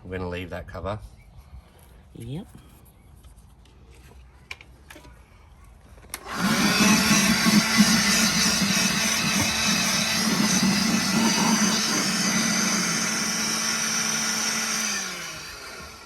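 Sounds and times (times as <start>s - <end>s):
electric drill running: 6.2s - 16.0s.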